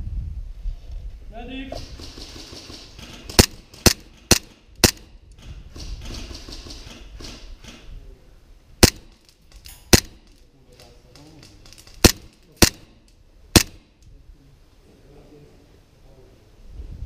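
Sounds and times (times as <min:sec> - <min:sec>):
airsoft gun shots: 0:01.8 - 0:07.6, 0:08.8 - 0:09.3, 0:09.9 - 0:10.4, 0:11.6 - 0:14.0.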